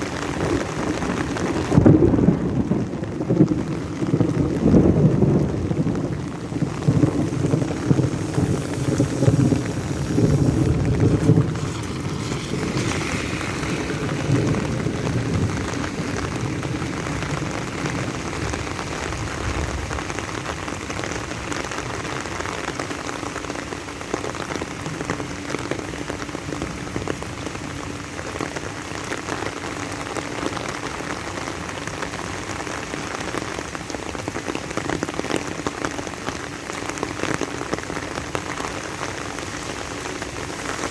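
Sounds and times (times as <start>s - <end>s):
rain pattering: 0.0s - 40.9s
low rumble: 1.8s - 22.5s.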